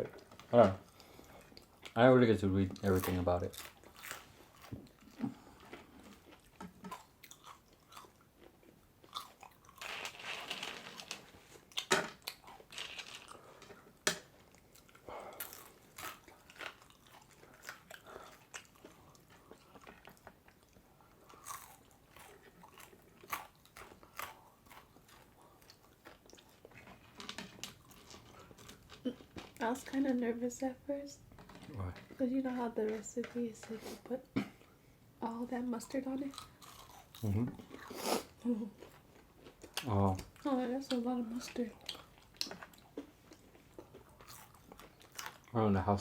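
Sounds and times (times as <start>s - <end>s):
chewing and biting food: 2.7s - 10.2s, 11.0s - 29.6s, 36.3s - 45.5s
crunching fries: 2.8s - 13.8s, 14.5s - 29.6s, 36.3s - 38.0s, 38.8s - 46.0s.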